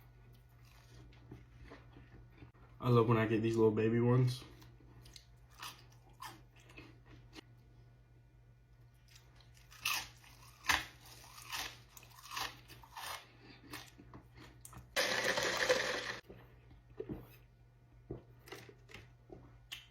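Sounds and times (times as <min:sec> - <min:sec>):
person chewing crunchy food: 0:00.0 - 0:02.7, 0:04.5 - 0:07.5, 0:08.9 - 0:15.0.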